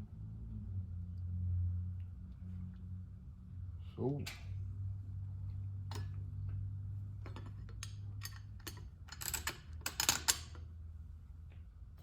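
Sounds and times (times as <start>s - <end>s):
metallic clicks and clatter: 7.2s - 10.7s.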